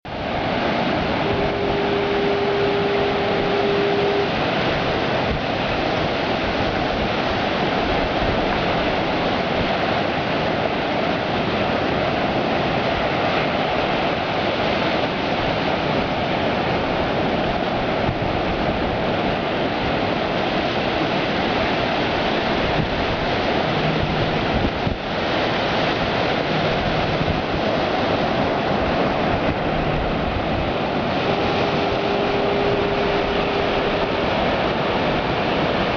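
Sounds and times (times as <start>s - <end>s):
ocean surf breaking: 0.1s - 35.9s
horn steady note: 0.6s - 6.0s, 22.8s - 25.4s, 30.8s - 35.9s
faint low horn notes: 1.0s - 4.4s, 31.0s - 34.8s.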